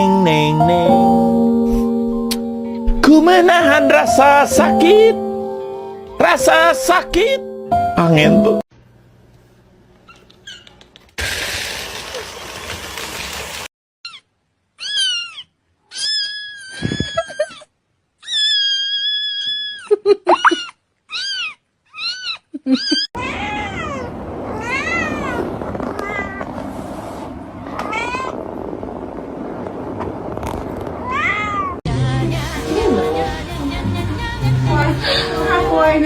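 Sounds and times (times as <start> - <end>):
cat meowing: 14.8 - 17.6, 21.1 - 26.5, 27.8 - 28.4, 31.0 - 31.8.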